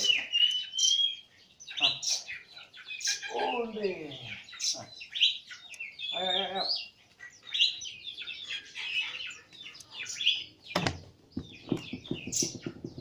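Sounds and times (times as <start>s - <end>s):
small birds chirping: 0.0s - 13.0s
sharp knock: 10.8s - 13.0s.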